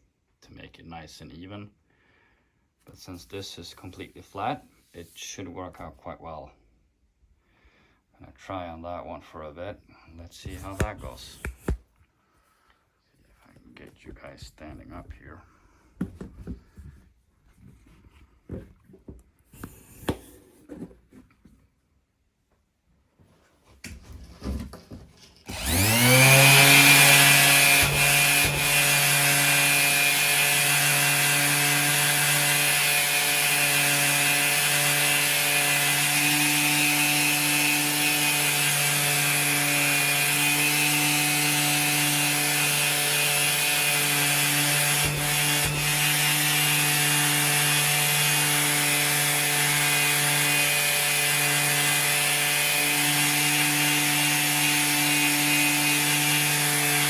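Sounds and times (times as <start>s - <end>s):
orbital sander running: 25.5s - 57.0s.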